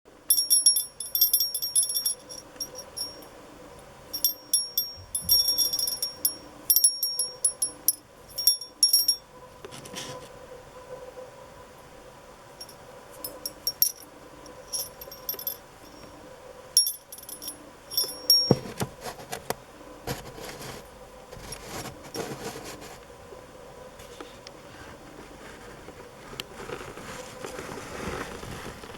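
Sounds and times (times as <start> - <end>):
rattling and handling knocks: 0.3 - 3.3, 4.1 - 9.2, 12.6 - 14.0, 14.7 - 16.1, 16.8 - 19.2
small brass bell ringing: 0.3 - 3.3, 4.1 - 9.2, 12.6 - 14.0, 14.7 - 16.1, 16.8 - 18.7.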